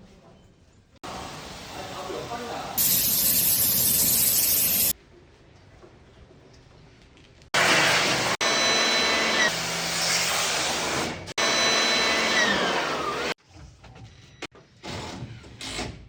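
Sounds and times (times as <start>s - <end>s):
cleaning equipment motor: 2.8s - 4.9s, 11.4s - 13.4s.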